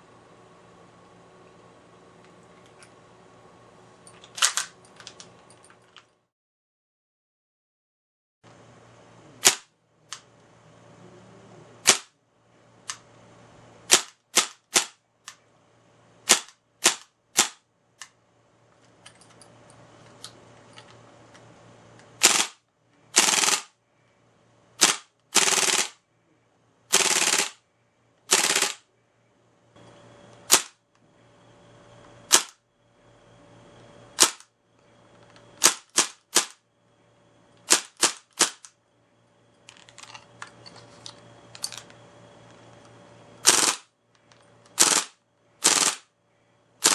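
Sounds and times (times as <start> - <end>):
airsoft gun shots: 9.4 - 9.7, 22.2 - 22.6
full-auto gun bursts: 11.8 - 12.1, 22.2 - 23.7, 24.8 - 26.0, 26.9 - 27.6, 28.3 - 28.8, 37.7 - 38.7, 43.4 - 43.9, 44.8 - 46.1.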